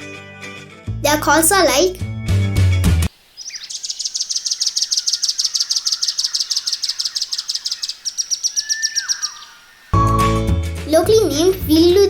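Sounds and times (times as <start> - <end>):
bird calling rapid sharp notes: 3.4 - 10.4.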